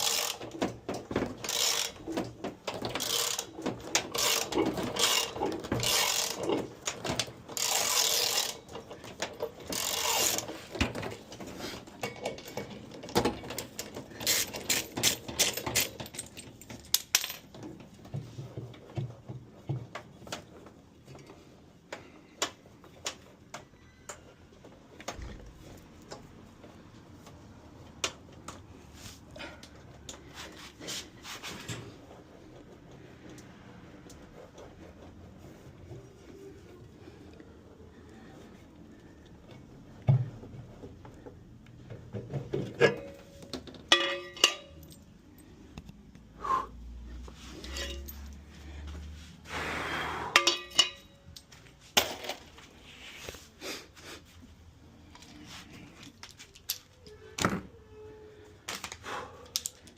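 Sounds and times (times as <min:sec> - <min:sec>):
tools and parts clattering: 0:00.0 - 0:24.3, 0:39.5 - 0:46.0, 0:47.2 - 0:49.1, 0:50.3 - 0:53.4, 0:55.0 - 0:57.8, 0:58.6 - 0:59.9.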